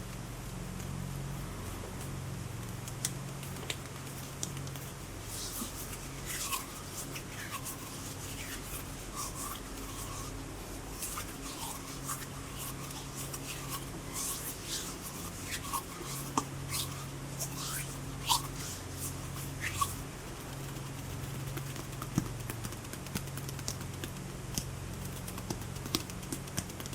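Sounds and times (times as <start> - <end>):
steady low hum: 0.0 - 26.2
hands rubbing: 3.9 - 21.0.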